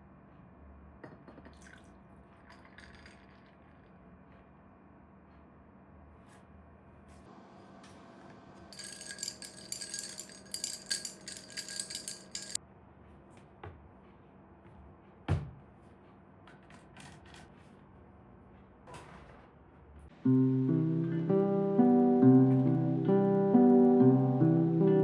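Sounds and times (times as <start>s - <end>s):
small hard objects clicking and rattling: 8.8s - 12.6s.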